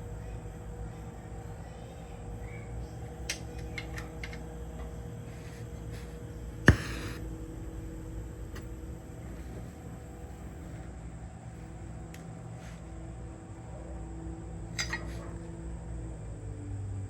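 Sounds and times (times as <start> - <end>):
loud sharp knock: 6.7 - 7.2.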